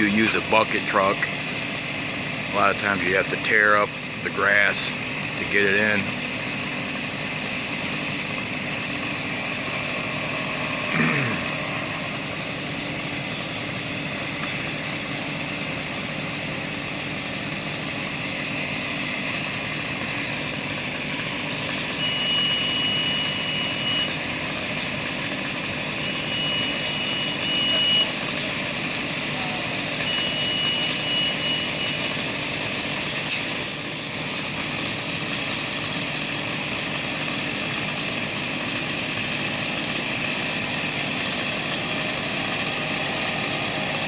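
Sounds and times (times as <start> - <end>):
small engine idling: 0.0 - 44.0
long high beeps: 22.0 - 24.2, 26.0 - 28.1, 30.0 - 32.1.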